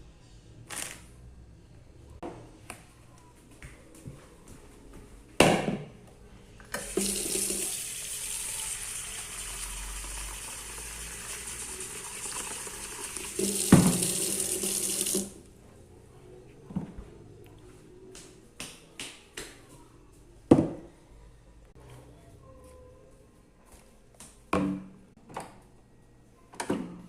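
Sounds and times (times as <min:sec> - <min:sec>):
water running from a tap: 0:06.8 - 0:15.4.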